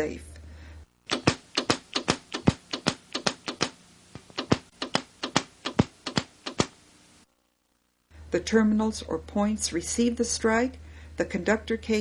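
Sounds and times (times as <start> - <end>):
high-voltage sparks snapping: 1.1 - 6.8.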